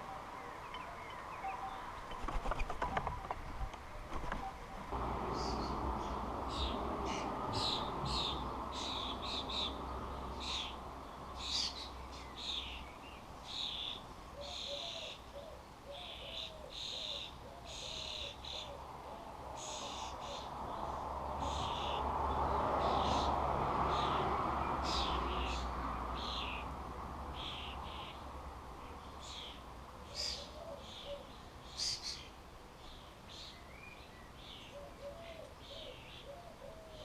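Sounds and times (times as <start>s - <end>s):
low steady rumble: 4.9s - 11.3s.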